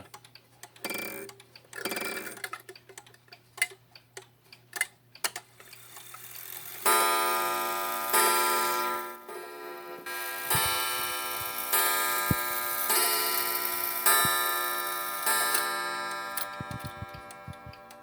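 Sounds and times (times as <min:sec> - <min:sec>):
clock ticking: 0:10.1 - 0:18.0
clock chime strike: 0:10.3 - 0:17.8.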